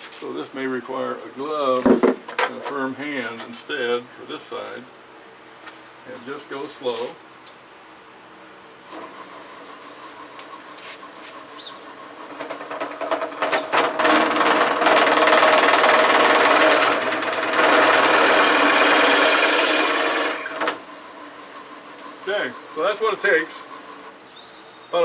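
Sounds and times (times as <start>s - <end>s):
power tool whining: 8.8s - 24.2s
blade cutting workpiece: 8.9s - 24.1s.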